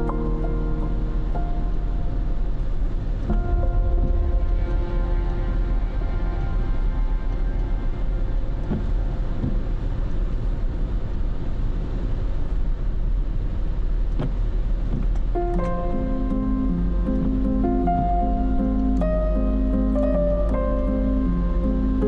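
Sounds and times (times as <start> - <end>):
music: 0.0 - 10.6, 15.4 - 22.0.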